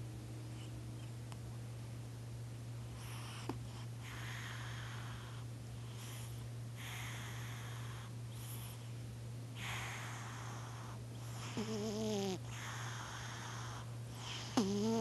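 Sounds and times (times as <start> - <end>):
cat snoring: 3.0 - 8.8, 9.6 - 15.0.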